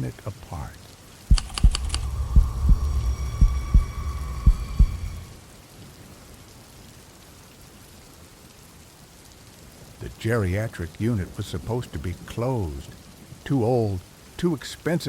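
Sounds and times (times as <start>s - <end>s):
steady rain: 0.0s - 15.0s
heartbeat thumps: 1.3s - 5.2s
low rumble: 1.3s - 5.4s.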